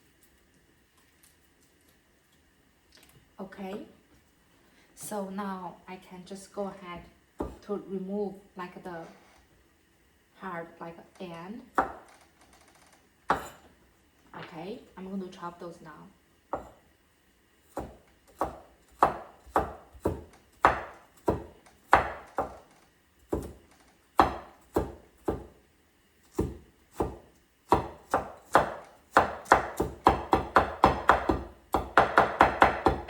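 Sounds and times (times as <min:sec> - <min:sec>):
knife chopping on cutting board: 0:13.3 - 0:13.6, 0:16.6 - 0:16.8, 0:17.7 - 0:22.7, 0:23.3 - 0:23.6, 0:24.2 - 0:25.6, 0:26.3 - 0:33.0.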